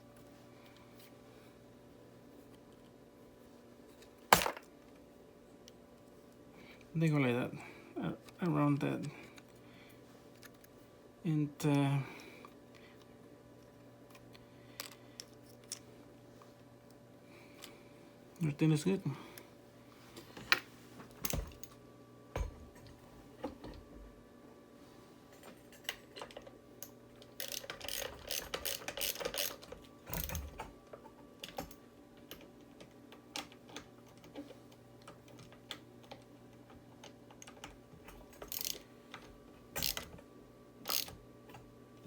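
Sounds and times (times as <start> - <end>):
plastic parts clicking and rattling: 27.2 - 30.7, 37.0 - 39.2, 40.9 - 41.1.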